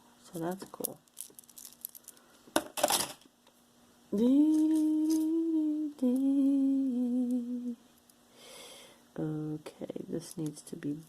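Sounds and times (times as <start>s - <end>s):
handling rustle: 0.4s - 2.2s
woman humming: 4.1s - 7.8s.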